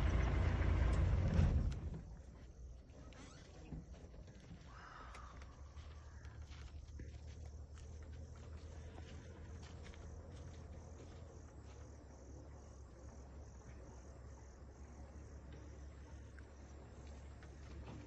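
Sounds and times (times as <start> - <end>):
insects chirping: 0.0 - 18.0.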